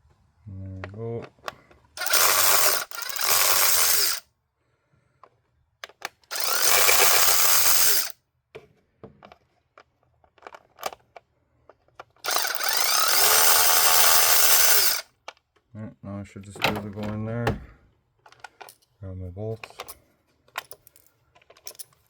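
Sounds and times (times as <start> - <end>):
pneumatic air ratchet running: 2.0 - 4.2, 6.3 - 8.1, 12.2 - 15.0
handling clicks and knocks: 16.5 - 18.9, 19.5 - 22.0.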